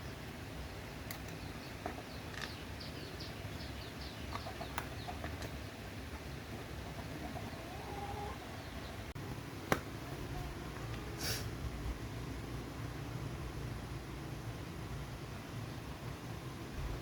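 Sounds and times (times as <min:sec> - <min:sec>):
birds chirping: 0:00.0 - 0:11.2.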